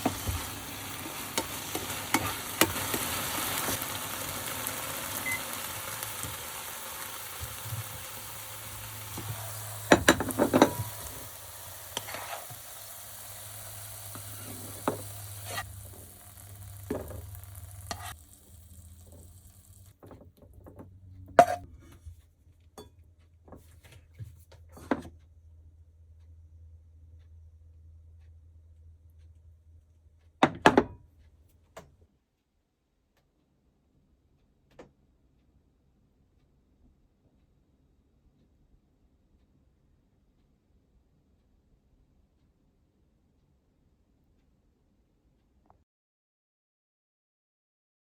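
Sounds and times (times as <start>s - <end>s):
vegetables sizzling in frying pan: 0.0s - 20.0s
spatula knocking against pan: 9.2s - 11.1s
utensils clinking: 9.2s - 11.3s.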